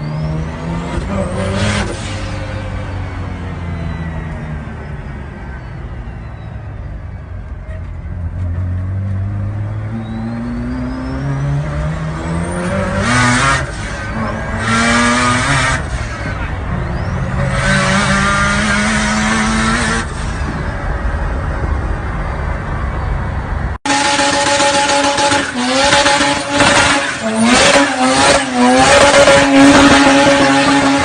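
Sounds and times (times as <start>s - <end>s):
rotary engine accelerating: 8.6s - 20.8s, 24.1s - 31.0s.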